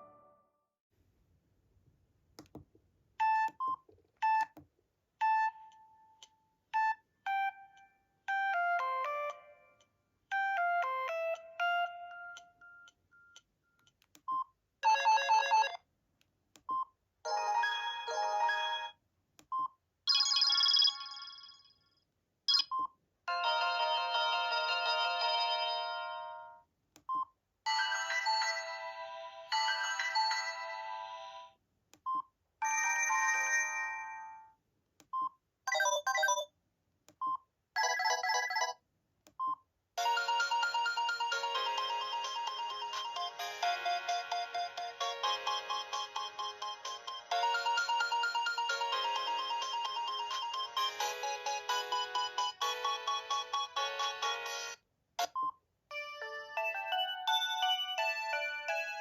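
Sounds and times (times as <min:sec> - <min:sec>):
electronic ringtone melodies: 0:17.3 - 0:19.0, 0:20.1 - 0:21.7, 0:40.0 - 0:54.8.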